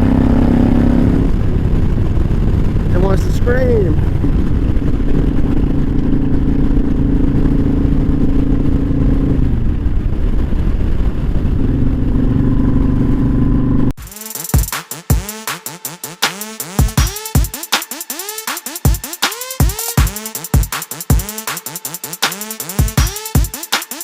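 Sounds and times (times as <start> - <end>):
motorcycle engine cruising: 0.0 - 13.9
wind rumbling on microphone: 0.0 - 13.9
electronic music with drum-machine beat: 14.0 - 24.0.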